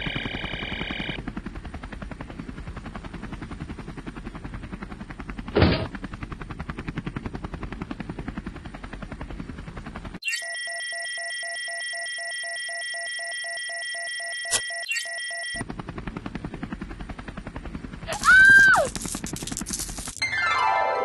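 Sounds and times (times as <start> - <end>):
pulsing electronic beeps: 10.2 - 15.6.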